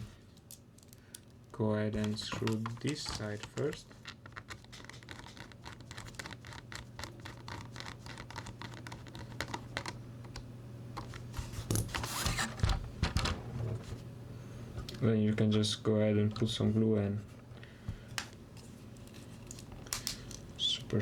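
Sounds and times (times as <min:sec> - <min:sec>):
handling knocks and rustles: 0:02.0 - 0:04.7, 0:11.0 - 0:14.1.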